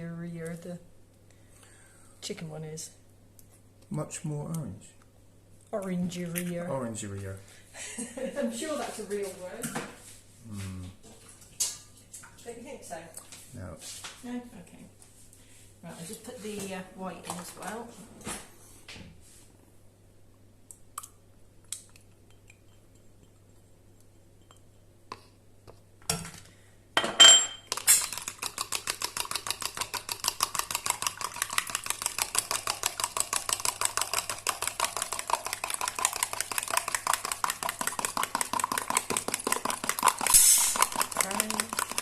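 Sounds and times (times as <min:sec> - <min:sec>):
utensil clinking beating eggs: 0:27.6 - 0:42.0.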